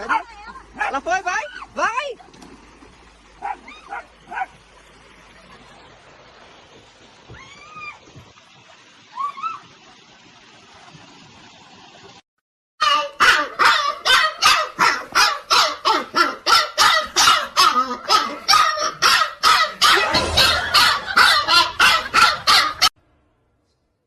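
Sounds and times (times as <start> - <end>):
dog barking rapidly: 12.9 - 22.9.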